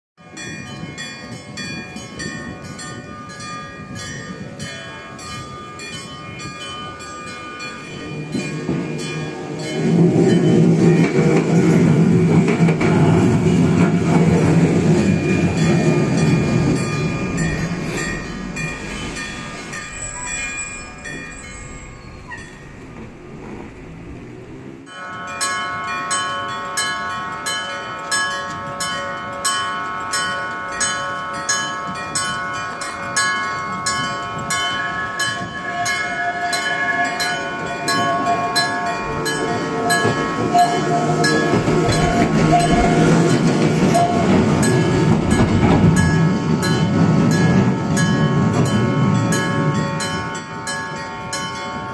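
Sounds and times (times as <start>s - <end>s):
level-crossing warning bell ringing: 0.2s - 51.9s
tram rumbling: 0.2s - 51.9s.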